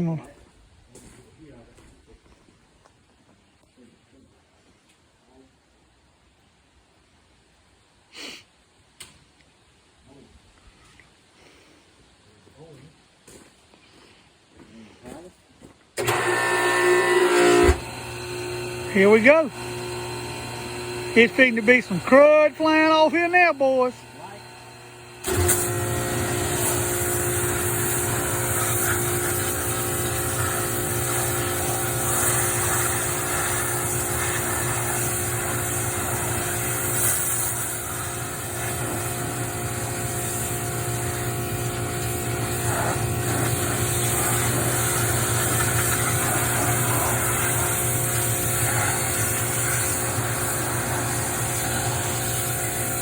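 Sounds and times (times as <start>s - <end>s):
pressure washer pump humming: 16.0s - 53.0s
high-pressure spray hissing: 18.4s - 24.4s, 25.2s - 53.0s.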